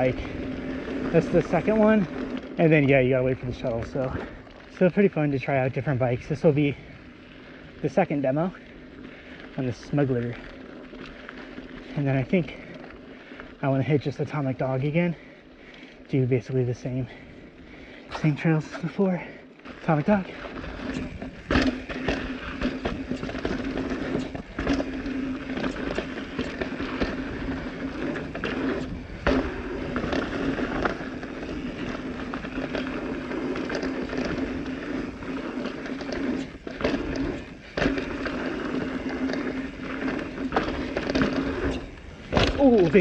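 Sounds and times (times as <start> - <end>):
bike tyres rolling on dirt: 0.0 - 43.0
bike knocks and rattles: 19.8 - 43.0.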